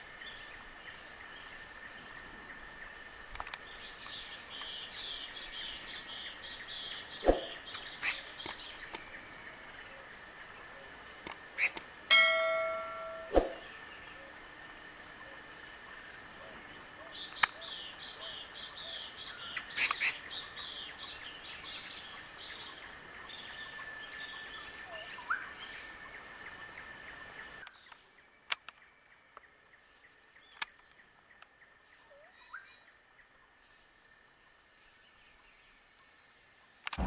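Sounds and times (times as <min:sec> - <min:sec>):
insect drones: 0:00.0 - 0:37.0
small birds chirping: 0:00.0 - 0:37.0.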